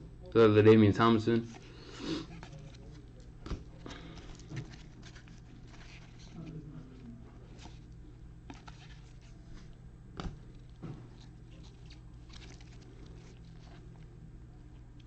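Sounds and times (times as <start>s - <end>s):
low electrical hum: 0.0s - 15.0s
trading cards being handled: 1.4s - 14.0s.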